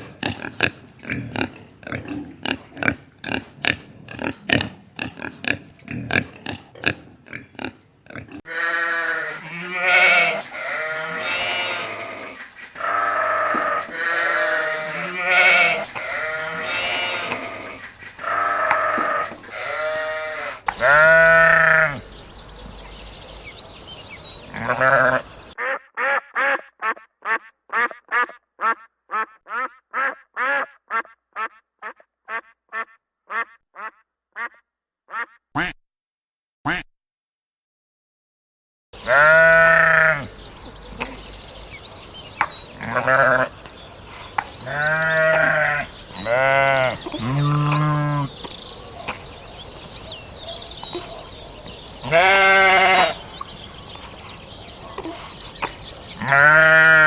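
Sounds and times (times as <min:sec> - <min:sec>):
livestock grunting: 0:00.0 - 0:23.3, 0:24.4 - 0:35.4, 0:39.0 - 0:57.0
ducks quacking: 0:00.0 - 0:35.8, 0:39.0 - 0:57.0
livestock bleating: 0:04.5 - 0:22.0, 0:24.5 - 0:35.3, 0:39.0 - 0:40.3, 0:42.8 - 0:43.6, 0:44.6 - 0:48.3, 0:52.0 - 0:53.4, 0:56.2 - 0:57.0.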